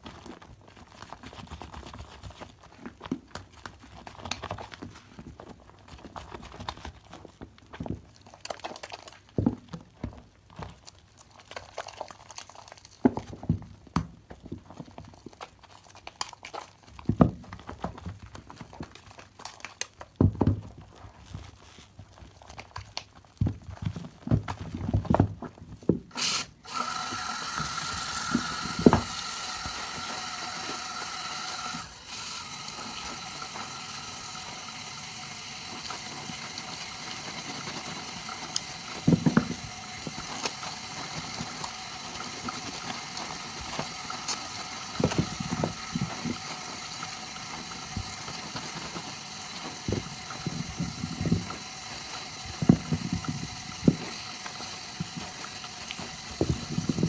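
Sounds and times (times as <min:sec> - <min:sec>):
soap lather crackling: 0:26.1 - 0:57.0.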